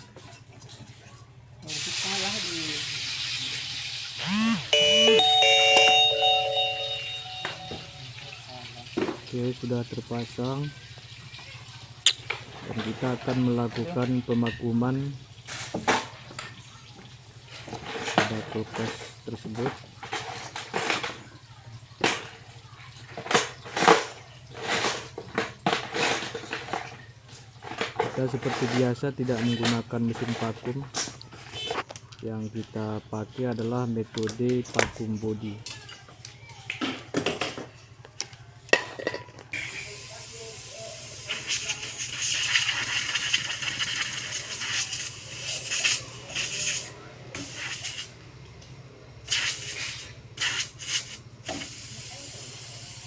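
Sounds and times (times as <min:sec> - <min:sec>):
refrigerator compressor humming: 0:04.2 - 0:08.4
sharp knocks and scraping: 0:12.1 - 0:14.8, 0:17.5 - 0:21.2, 0:23.0 - 0:32.0.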